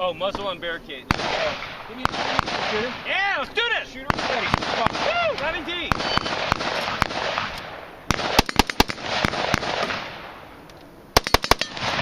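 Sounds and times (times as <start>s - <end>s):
gunshot echo: 1.1s - 3.1s, 4.0s - 5.2s, 5.9s - 10.5s, 11.2s - 12.0s
rifle shots in rapid bursts: 1.1s - 3.1s, 4.0s - 5.2s, 5.8s - 10.4s, 11.2s - 12.0s.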